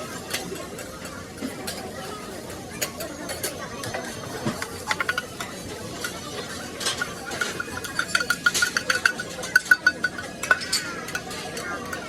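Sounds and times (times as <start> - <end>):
small hard objects clinking: 3.3 - 12.0.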